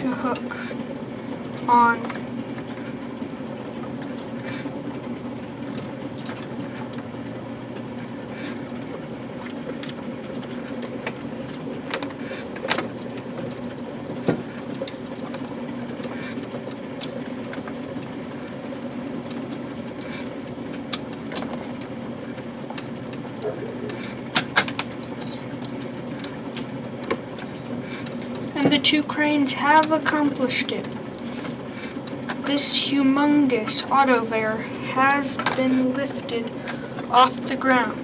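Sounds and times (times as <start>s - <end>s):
toy train humming: 0.0s - 38.0s.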